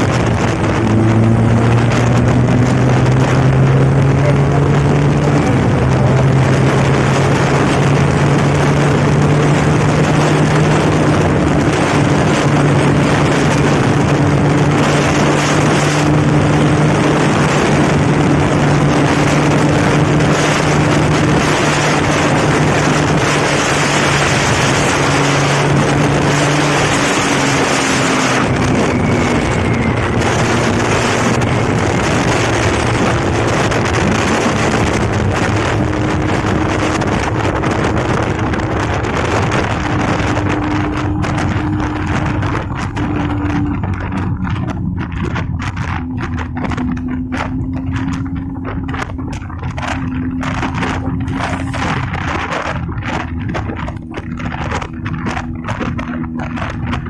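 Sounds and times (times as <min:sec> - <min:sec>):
motorcycle engine running: 0:00.0 - 0:57.0
wind rushing over microphone: 0:00.0 - 0:57.0.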